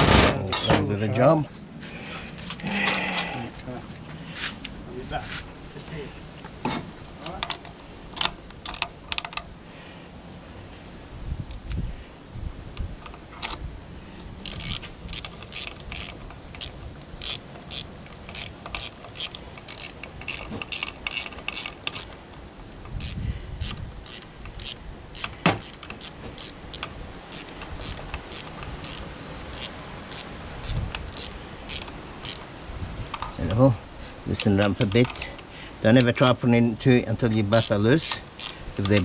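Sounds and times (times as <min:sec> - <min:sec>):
metallic tool clicks: 0:14.4 - 0:22.2, 0:23.0 - 0:32.4, 0:38.4 - 0:39.0.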